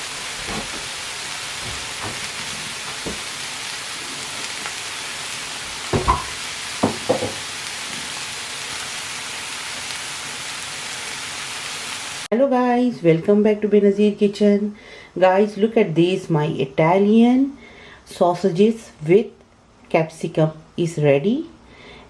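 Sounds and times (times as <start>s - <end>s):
food sizzling in a pan: 0.0s - 12.3s.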